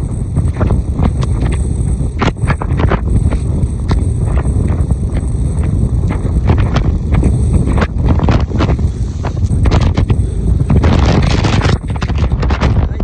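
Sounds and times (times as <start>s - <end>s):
wave breaking and rushing: 0.0s - 13.0s
wind buffeting microphone: 0.0s - 13.0s.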